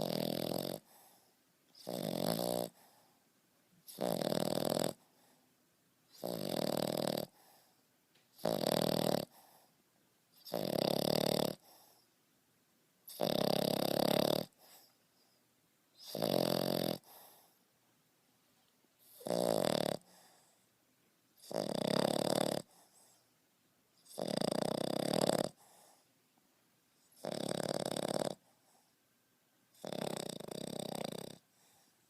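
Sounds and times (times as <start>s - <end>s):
puppy snoring: 0.0s - 3.2s, 3.8s - 5.4s, 6.1s - 12.1s, 13.0s - 15.4s, 16.0s - 17.6s, 19.0s - 20.6s, 21.4s - 23.3s, 23.9s - 26.1s, 27.0s - 29.0s, 29.7s - 32.0s
quiet breaths: 0.0s - 32.0s.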